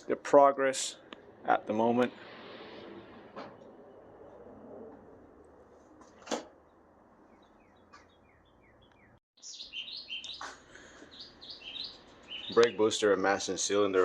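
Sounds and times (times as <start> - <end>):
small birds chirping: 6.6 - 14.0.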